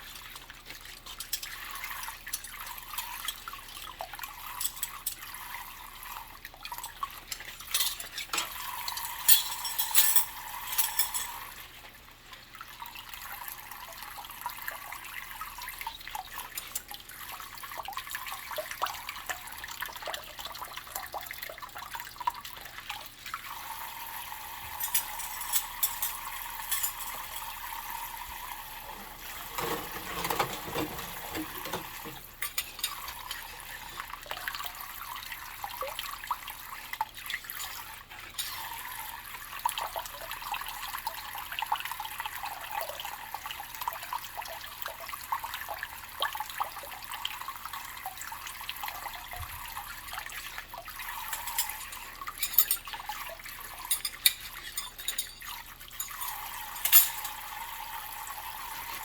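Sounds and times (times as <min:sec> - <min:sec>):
tap water running into sink: 0:00.0 - 0:59.0
dishware clicking and knocking: 0:29.5 - 0:33.0, 0:53.9 - 0:57.4.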